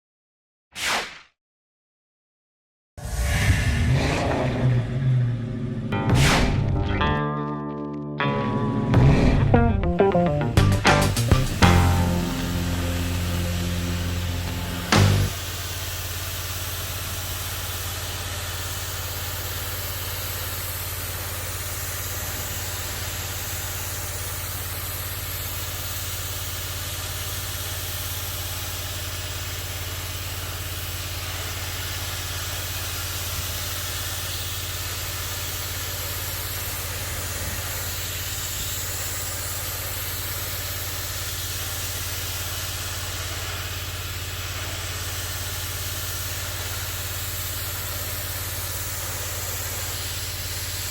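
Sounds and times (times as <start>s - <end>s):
pressure washer engine hum: 10.9s - 50.9s
water jet hissing: 11.6s - 50.9s.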